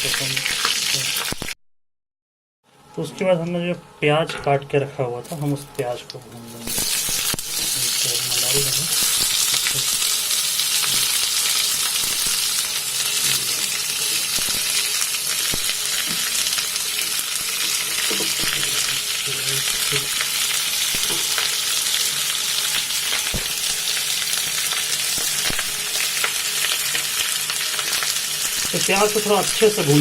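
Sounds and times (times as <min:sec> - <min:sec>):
onions sizzling in hot oil: 0:00.0 - 0:01.6, 0:06.6 - 0:30.0.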